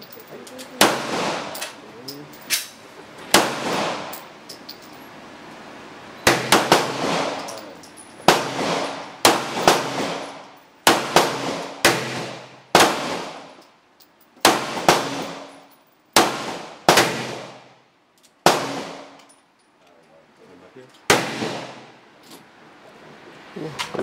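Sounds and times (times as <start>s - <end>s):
pistol shots with echo: 0.8s - 1.7s, 3.3s - 4.1s, 6.3s - 7.6s, 8.3s - 13.5s, 14.4s - 15.6s, 16.2s - 17.7s, 18.4s - 19.2s, 21.1s - 21.9s.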